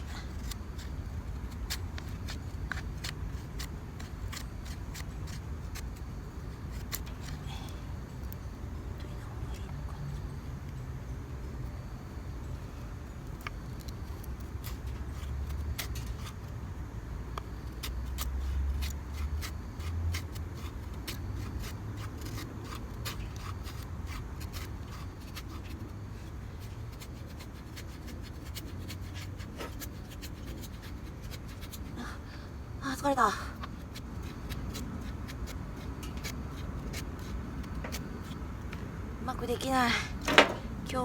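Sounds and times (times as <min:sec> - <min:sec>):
knife scraping wood: 0:00.0 - 0:07.4, 0:13.7 - 0:16.6, 0:17.4 - 0:32.0, 0:33.6 - 0:38.8.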